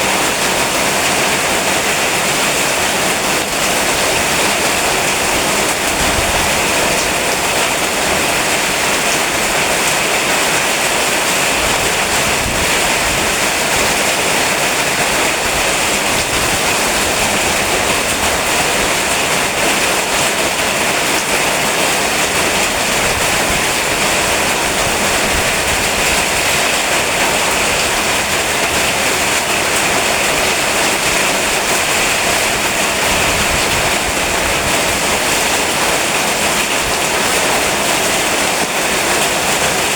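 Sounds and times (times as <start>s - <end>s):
rain falling steadily: 0.0s - 39.9s.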